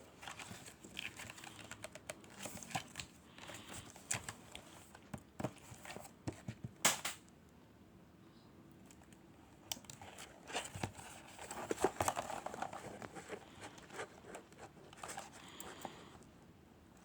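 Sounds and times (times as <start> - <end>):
packaging crinkling and rustling: 0.0 - 6.6, 9.8 - 16.2.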